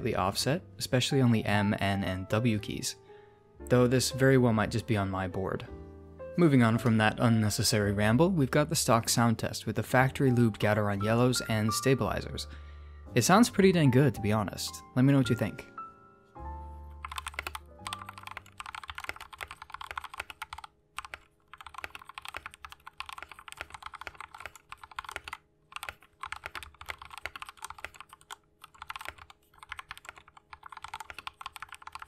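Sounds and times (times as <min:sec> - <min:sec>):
typing on mechanical keyboard: 0:17.0 - 0:32.0.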